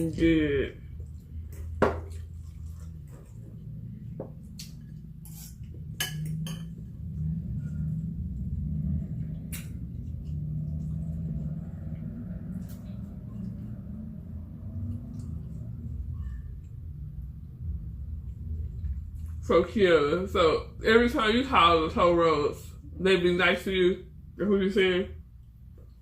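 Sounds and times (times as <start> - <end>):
low steady hum: 0.0 - 26.0
cutlery clinking on a plate: 5.3 - 6.8.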